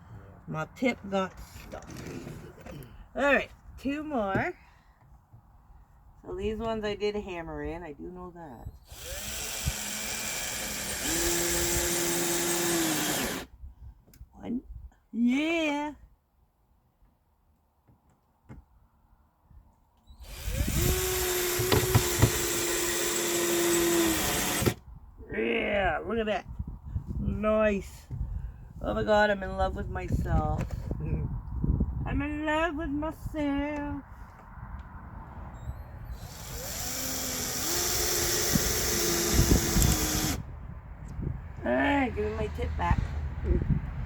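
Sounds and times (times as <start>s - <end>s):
power drill whining: 8.8s - 13.5s, 20.2s - 24.8s, 35.6s - 40.4s.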